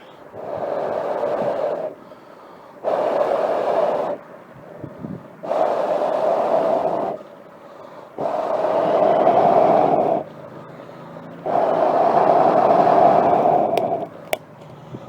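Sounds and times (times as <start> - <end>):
breaths blown into fire: 8.0 - 10.3, 11.4 - 15.0.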